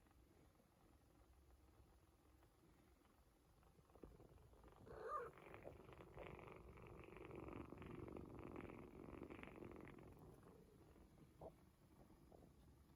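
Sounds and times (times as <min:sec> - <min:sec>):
cat purring: 0:00.0 - 0:12.9.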